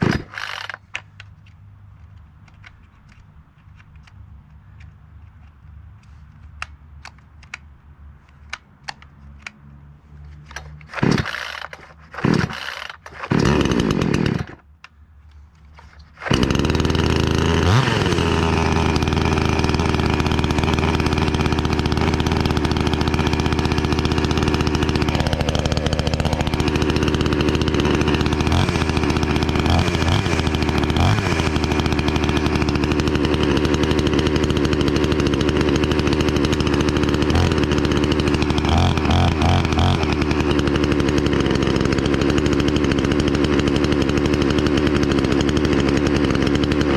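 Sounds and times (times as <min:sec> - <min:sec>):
chainsaw engine running: 0:00.0 - 0:01.0, 0:10.3 - 0:14.6, 0:15.6 - 0:46.9
starter cord pulls: 0:00.0 - 0:04.2, 0:10.2 - 0:46.9.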